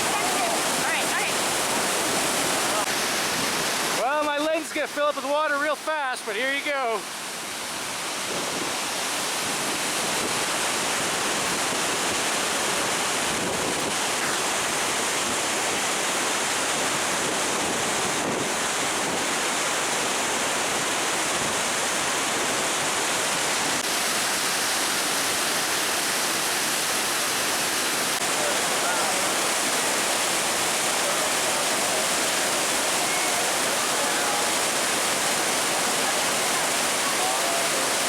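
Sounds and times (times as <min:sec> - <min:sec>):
waterfall and rushing white water: 0:00.0 - 0:38.0.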